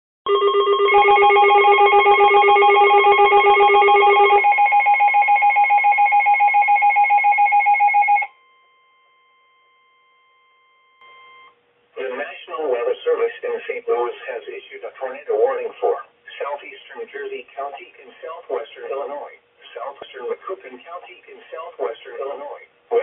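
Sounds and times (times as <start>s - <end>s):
pulsing electronic alert beeps: 0.9s - 8.3s
faint steady tone: 8.3s - 11.6s.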